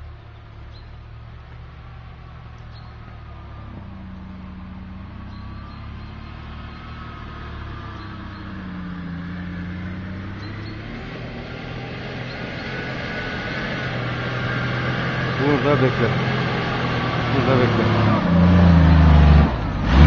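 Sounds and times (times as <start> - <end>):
vehicle engine running: 0.0 - 20.0.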